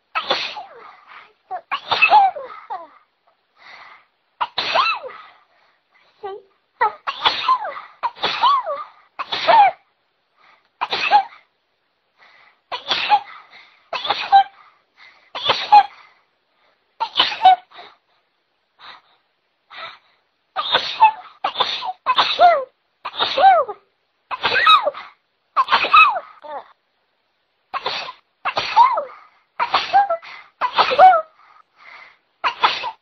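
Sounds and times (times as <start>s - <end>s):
person sneezing: 20.6s - 23.8s, 24.4s - 26.6s, 27.8s - 31.3s, 32.5s - 33.0s.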